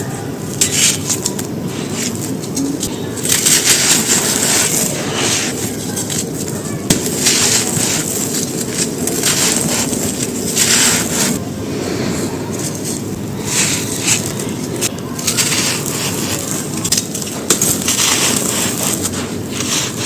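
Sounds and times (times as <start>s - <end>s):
stone crunching and crumbling: 0.6s - 11.4s.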